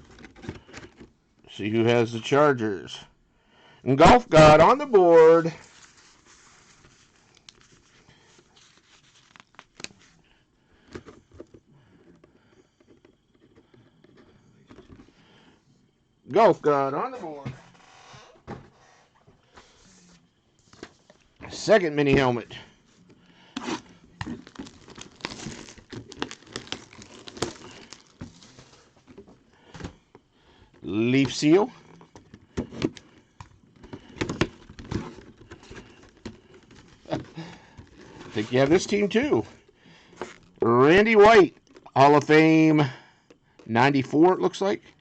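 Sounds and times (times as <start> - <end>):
handling clicks and rustles: 20.6 - 42.0.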